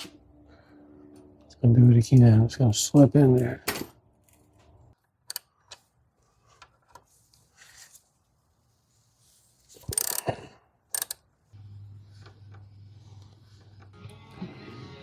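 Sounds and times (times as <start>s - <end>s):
ratchet strap clicking: 9.9s - 10.2s, 10.9s - 11.2s.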